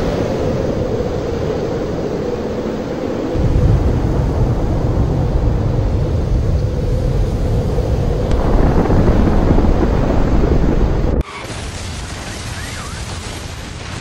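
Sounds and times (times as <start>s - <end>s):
deep rumbling explosion roar: 3.2s - 13.9s.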